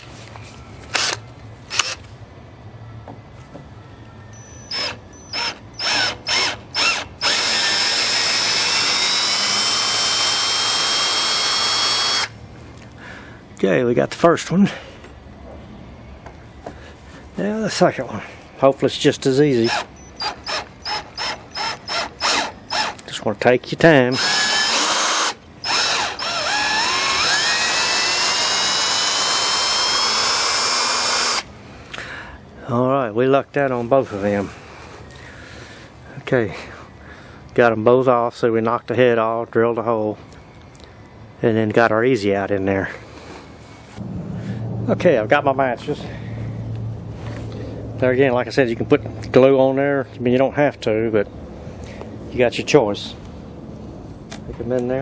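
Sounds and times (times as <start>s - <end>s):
power drill running: 1.0s - 2.0s, 4.4s - 12.3s, 19.6s - 23.0s, 24.1s - 31.5s.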